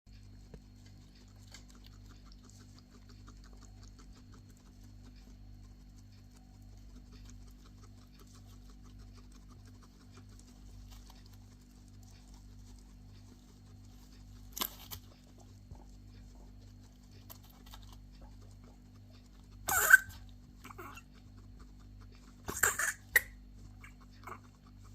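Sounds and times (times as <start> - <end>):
guinea pig clicking: 0.1 - 24.9
guinea pig coughing: 17.2 - 24.9.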